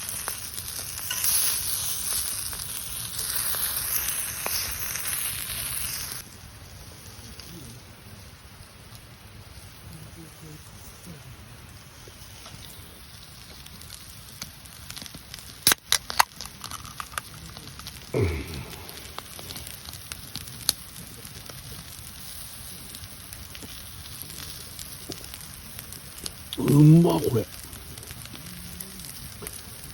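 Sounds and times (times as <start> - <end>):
campfire crackling: 0.0 - 29.9
food sizzling on a griddle: 0.0 - 29.9.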